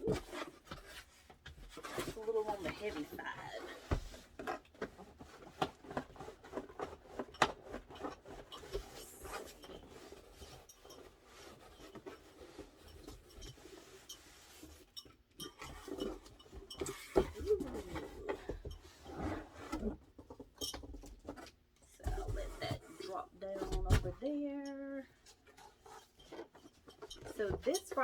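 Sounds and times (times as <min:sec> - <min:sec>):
cardboard box rubbing and scraping: 0:00.0 - 0:14.8, 0:16.8 - 0:20.1.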